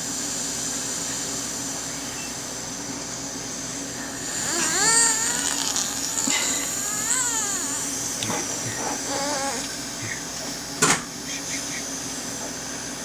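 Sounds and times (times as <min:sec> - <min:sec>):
baby whimpering cry: 0:04.4 - 0:10.2.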